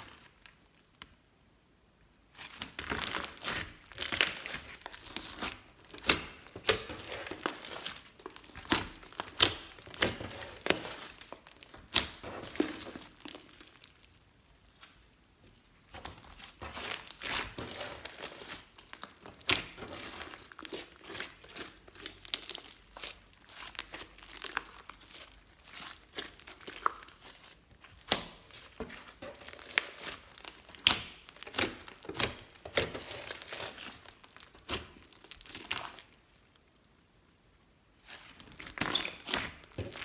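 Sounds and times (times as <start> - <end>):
slime squishing and crackling: 0.0 - 1.1, 2.3 - 36.8, 38.0 - 40.0
slime popping: 2.6 - 14.1, 15.9 - 36.1.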